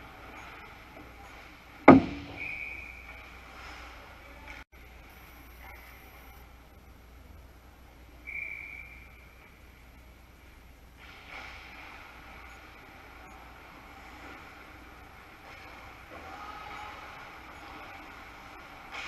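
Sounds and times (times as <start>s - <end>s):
ice hockey rink noise: 0.0s - 19.0s
short whistle: 2.3s - 3.2s, 8.2s - 9.2s.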